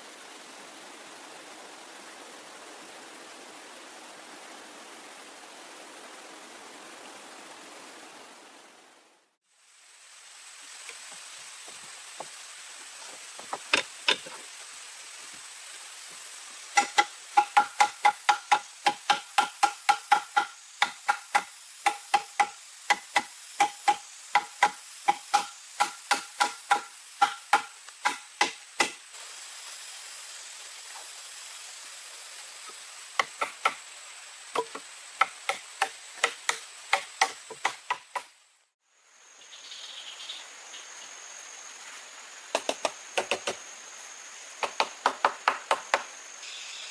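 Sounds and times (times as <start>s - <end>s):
tool striking wood: 16.8s - 29.0s, 44.6s - 46.1s.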